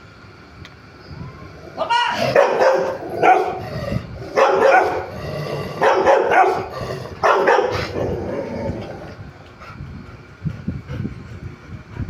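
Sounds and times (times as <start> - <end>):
dog barking: 1.8 - 3.7, 4.3 - 8.5.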